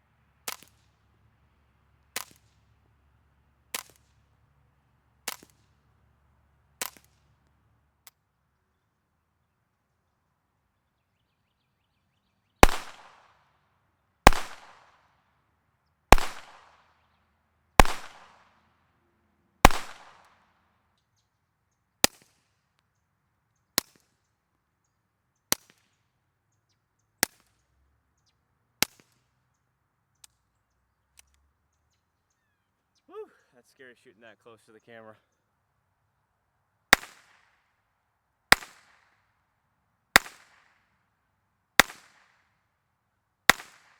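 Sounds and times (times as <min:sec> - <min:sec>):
rifle gunshots: 0:12.6 - 0:13.3, 0:14.2 - 0:14.9, 0:16.1 - 0:16.8, 0:17.8 - 0:18.4, 0:19.6 - 0:20.3.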